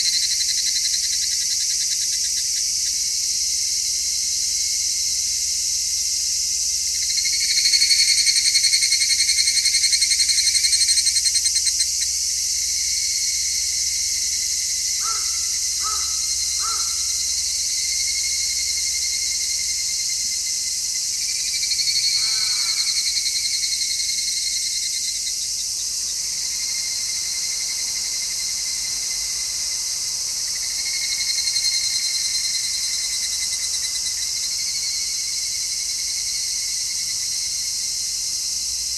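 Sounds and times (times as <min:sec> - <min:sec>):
cicadas shrilling: 0:00.0 - 0:38.9
near cicada pulsing song: 0:00.0 - 0:38.9.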